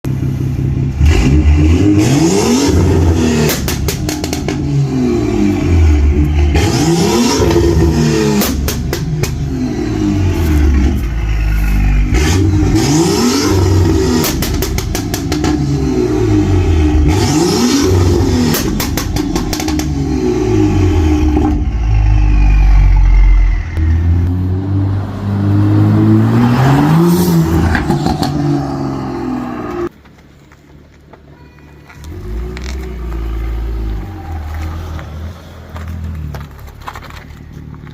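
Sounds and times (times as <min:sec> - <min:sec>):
car engine revving in blips: 0:00.8 - 0:29.9
exhaust pops and crackles: 0:03.4 - 0:04.8, 0:08.3 - 0:09.5, 0:14.1 - 0:15.8, 0:18.3 - 0:20.0, 0:35.7 - 0:37.9.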